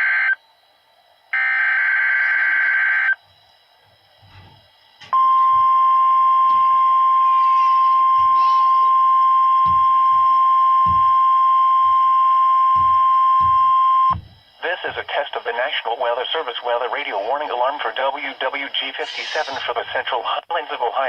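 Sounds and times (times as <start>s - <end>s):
steady high alert tone: 6.2s - 19.8s.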